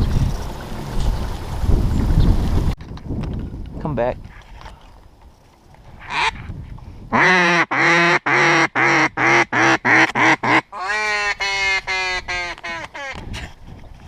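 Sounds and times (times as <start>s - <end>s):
duck call quacks: 6.0s - 6.4s, 7.2s - 13.2s.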